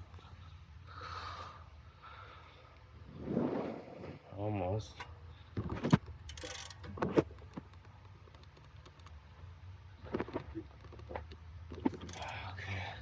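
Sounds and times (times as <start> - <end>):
hand tools clicking on metal: 11.9 - 12.4.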